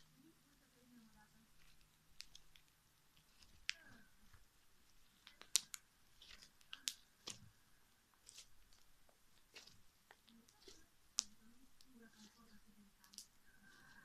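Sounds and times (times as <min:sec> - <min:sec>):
slime clicks and crackles: 0:01.6 - 0:04.4, 0:05.0 - 0:07.5, 0:08.1 - 0:13.4.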